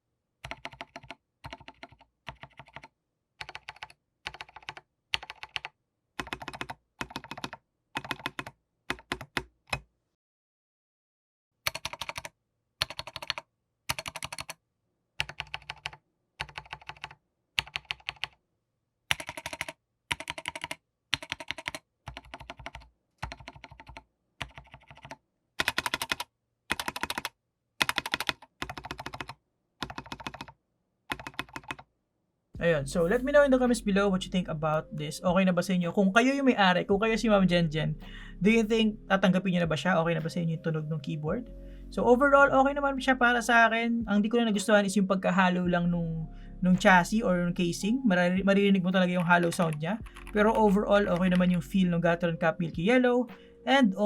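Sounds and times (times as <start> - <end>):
mechanical keyboard key clicks: 11.7 - 14.6, 19.1 - 30.5.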